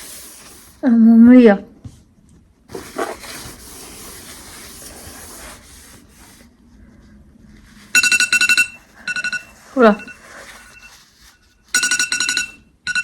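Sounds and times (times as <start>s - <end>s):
timer alarm beeping rapidly: 8.0s - 11.0s, 11.7s - 13.0s.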